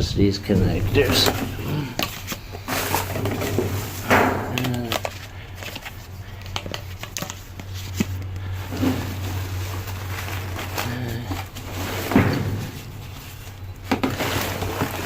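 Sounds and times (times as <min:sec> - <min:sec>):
rustling trash: 0:00.0 - 0:06.4, 0:07.0 - 0:15.0.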